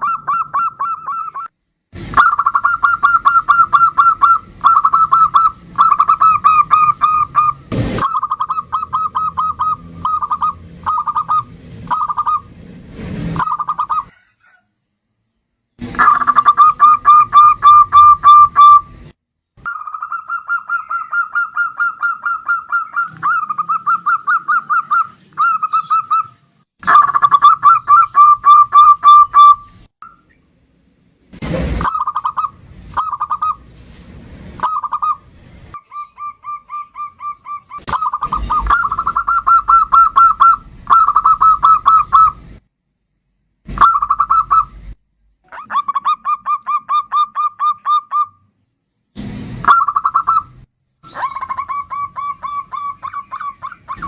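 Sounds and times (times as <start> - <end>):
dove cooing: 0.0 - 1.5, 2.2 - 12.5, 13.4 - 14.6, 16.0 - 18.8, 19.7 - 29.6, 31.8 - 33.6, 35.9 - 42.4, 43.8 - 44.8, 51.1 - 54.0.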